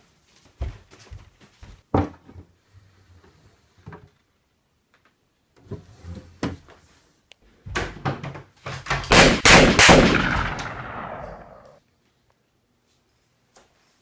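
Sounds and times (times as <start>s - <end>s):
gunshots with echo: 9.1s - 11.8s.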